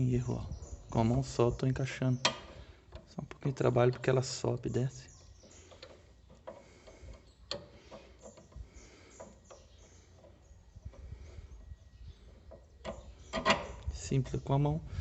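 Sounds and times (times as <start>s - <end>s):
light metallic clicks and knocks: 1.4s - 11.0s, 12.2s - 14.4s.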